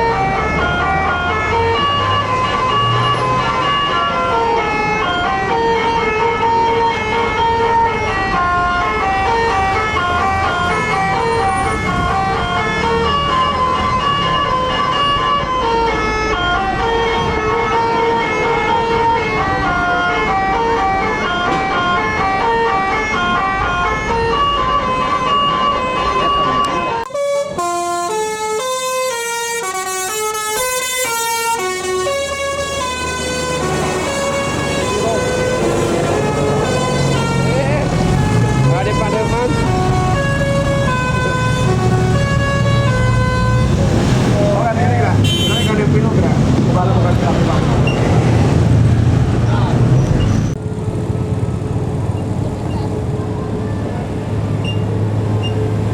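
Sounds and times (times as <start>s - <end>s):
bus engine rumble: 0.0s - 55.9s
air horn playing a tune: 26.3s - 43.8s, 45.2s - 45.9s.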